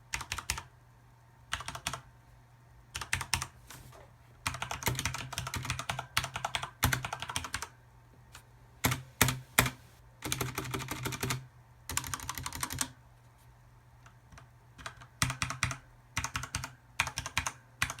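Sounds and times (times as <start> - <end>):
mechanical keyboard typing: 0.1 - 0.7, 1.5 - 2.0, 2.9 - 3.6, 4.4 - 7.7, 8.8 - 13.0, 14.3 - 18.0.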